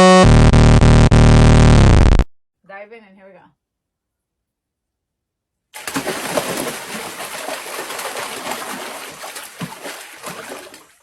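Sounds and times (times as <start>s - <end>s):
mouth-made splashing sound: 5.8s - 11.0s.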